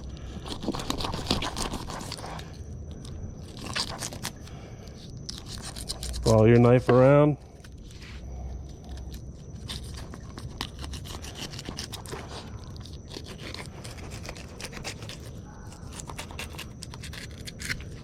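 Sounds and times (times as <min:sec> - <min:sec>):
knife scraping through fish: 0:00.4 - 0:02.6, 0:03.5 - 0:04.4, 0:05.3 - 0:06.3, 0:09.6 - 0:18.0.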